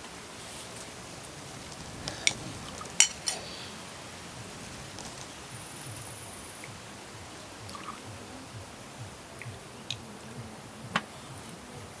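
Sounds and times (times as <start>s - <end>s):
cutlery clinking against dishes: 3.0s - 3.6s.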